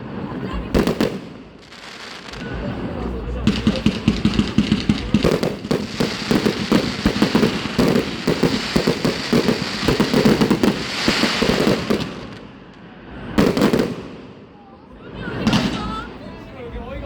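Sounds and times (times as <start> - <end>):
fireworks popping and banging: 0.6 - 14.4.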